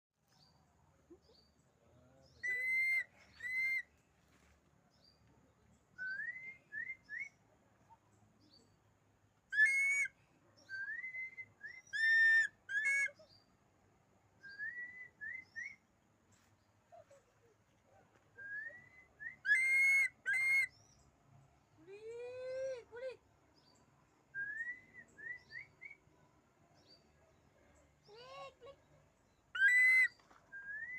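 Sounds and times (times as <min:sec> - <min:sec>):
small birds chirping: 0:00.2 - 0:08.9, 0:09.6 - 0:13.6, 0:14.4 - 0:30.6
hawk-eagle shrill whistled calls: 0:02.4 - 0:03.8, 0:09.6 - 0:10.1, 0:10.8 - 0:13.2, 0:18.5 - 0:20.7, 0:29.6 - 0:30.9.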